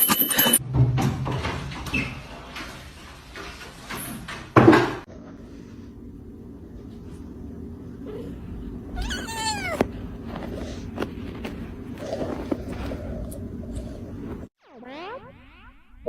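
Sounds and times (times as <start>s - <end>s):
low background hum: 5.1s - 14.5s
cat meowing: 9.0s - 9.9s.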